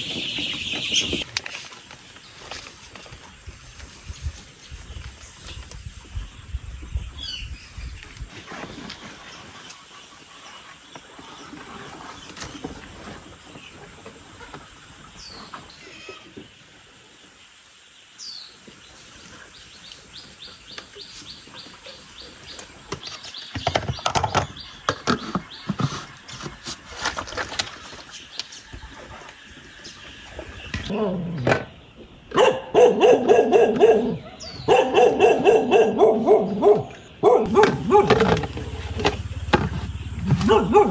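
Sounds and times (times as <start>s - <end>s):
chicks peeping: 0.0s - 1.3s.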